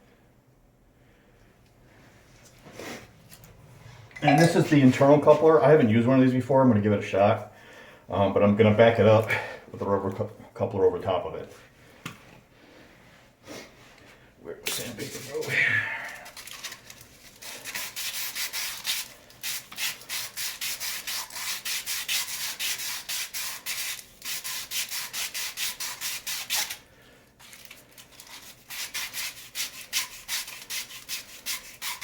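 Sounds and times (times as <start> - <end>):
sandpaper rubbing on pipe: 14.7 - 15.6, 17.3 - 26.8, 27.4 - 32.0.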